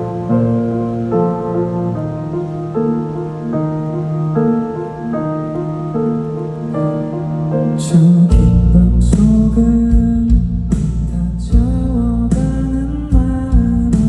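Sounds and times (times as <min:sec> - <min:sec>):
live band music: 0:07.8 - 0:14.0.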